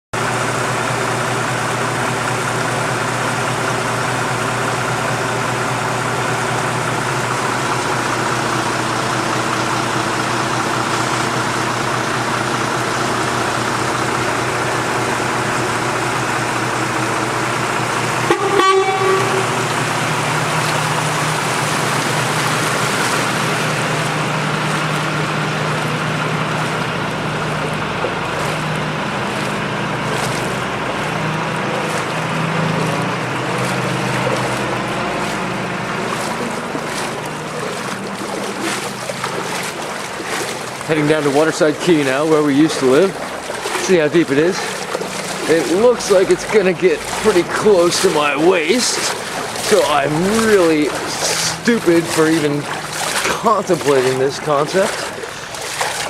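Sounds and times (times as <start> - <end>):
low engine hum: 0.2 - 56.0
vehicle horn toot: 18.2 - 20.0.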